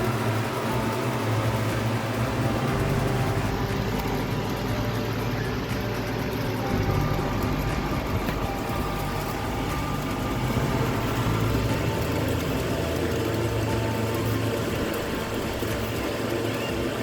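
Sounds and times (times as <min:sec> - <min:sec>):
motor hum with whirring: 0:00.0 - 0:17.0.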